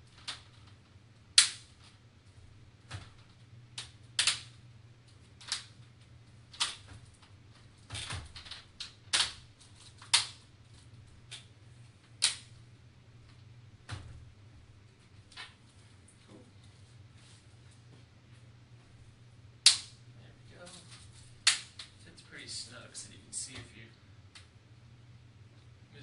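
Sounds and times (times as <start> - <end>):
plastic clips snapping into place: 1.4 - 1.6, 19.6 - 19.9, 21.4 - 21.9.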